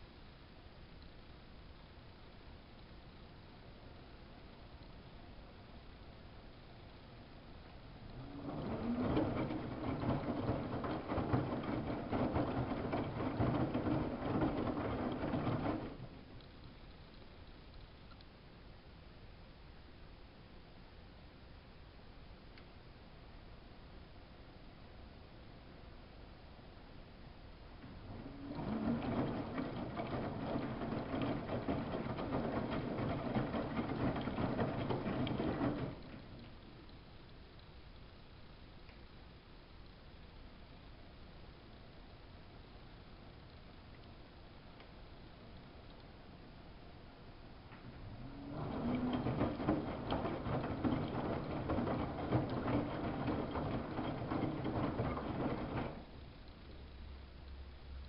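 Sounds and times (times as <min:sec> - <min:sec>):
washing machine motor hum: 0:07.8 - 0:16.4, 0:27.7 - 0:36.8, 0:47.5 - 0:56.4.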